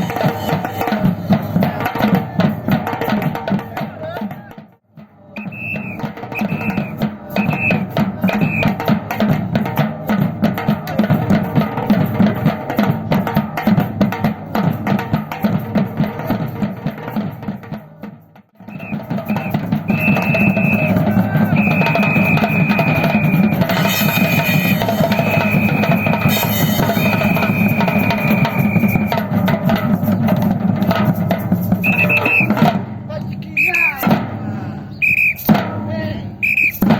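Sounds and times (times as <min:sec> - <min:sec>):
percussion drums playing groove: 0:00.0 - 0:36.9
high steady whistle tones: 0:05.3 - 0:08.9, 0:18.6 - 0:29.3, 0:31.8 - 0:32.6, 0:33.4 - 0:34.0, 0:34.9 - 0:35.5, 0:36.4 - 0:36.9.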